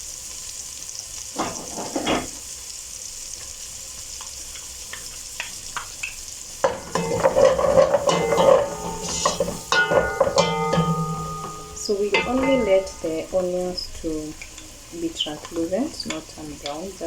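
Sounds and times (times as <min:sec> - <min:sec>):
onions sizzling in a pan: 0:00.0 - 0:17.0
spatula scraping and tapping pan: 0:04.5 - 0:17.0
steady tones: 0:06.6 - 0:17.0.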